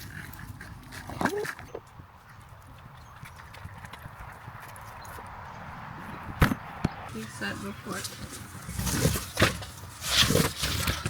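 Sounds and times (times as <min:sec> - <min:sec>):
sharp thump: 0:06.4 - 0:07.0.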